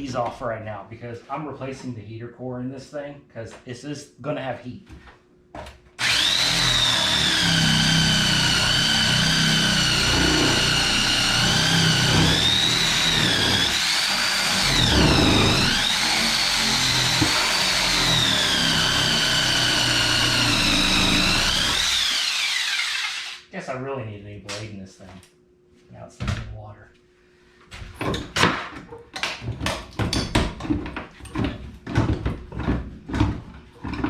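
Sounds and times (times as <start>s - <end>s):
electric power saw cutting: 6.0s - 23.5s.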